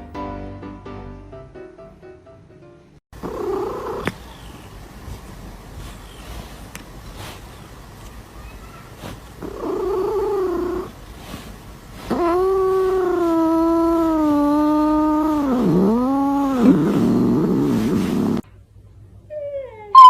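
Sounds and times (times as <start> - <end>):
cat yowling: 9.4 - 10.9, 12.0 - 18.4.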